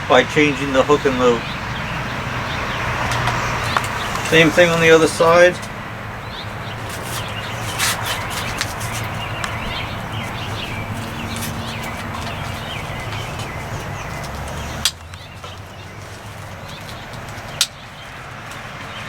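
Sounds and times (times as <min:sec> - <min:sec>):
birds chirping faintly: 0:00.0 - 0:19.0
buckles clicking: 0:06.6 - 0:17.8.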